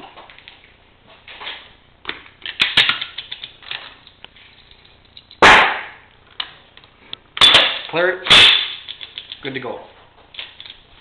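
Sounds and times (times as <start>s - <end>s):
loud gunshot: 5.4s - 6.0s.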